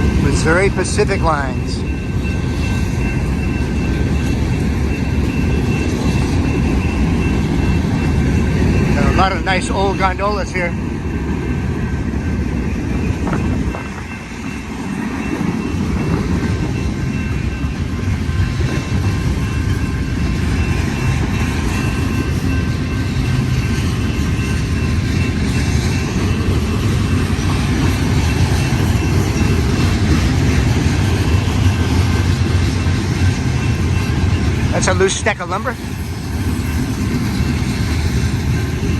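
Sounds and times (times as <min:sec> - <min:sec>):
train wheels rumbling on rails: 0:00.0 - 0:38.9.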